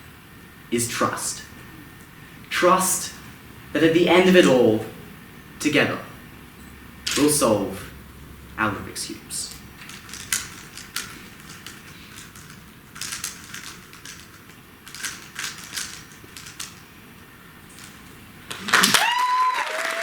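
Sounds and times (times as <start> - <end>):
sharp clicks and rustles: 9.5 - 16.9
audience applause: 18.5 - 20.0.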